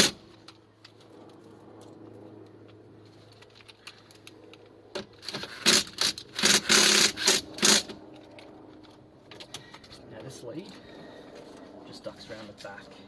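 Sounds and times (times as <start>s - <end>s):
cordless drill driving screws: 5.2s - 7.9s.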